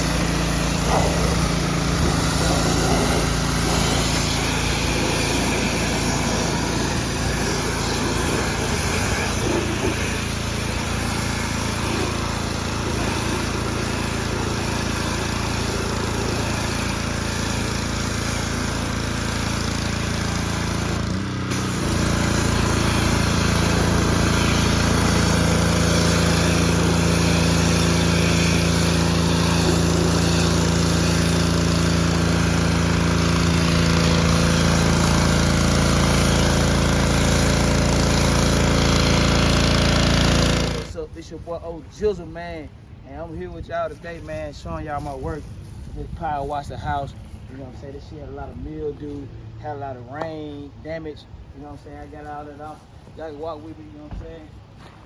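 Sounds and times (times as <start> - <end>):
water spray hissing: 0.0 - 42.7
pressure washer engine running: 0.0 - 55.0.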